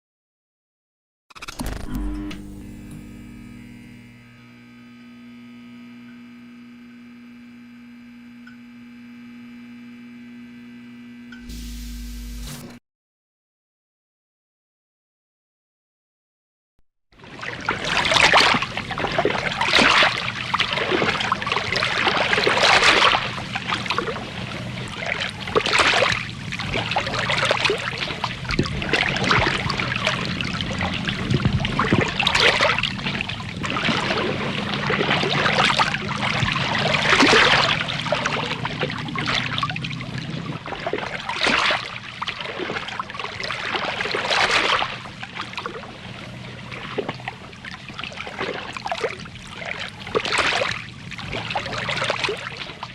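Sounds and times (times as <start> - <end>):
continuous water wash: 17.2 - 52.9
water splashing and lapping: 17.2 - 52.9.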